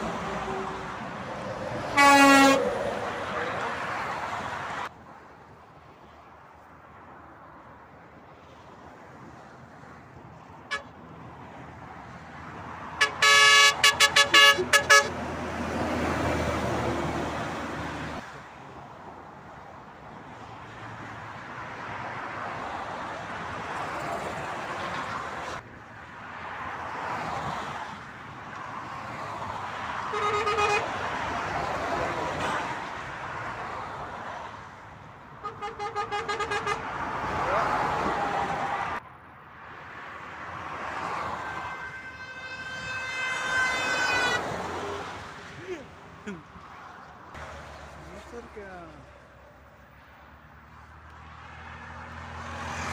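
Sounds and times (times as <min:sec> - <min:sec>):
motorway traffic passing: 0:00.0 - 0:52.9
vehicle horns tooting: 0:01.9 - 0:02.7, 0:10.7 - 0:10.9, 0:13.0 - 0:15.2, 0:30.1 - 0:31.0, 0:35.4 - 0:36.9, 0:41.4 - 0:44.6.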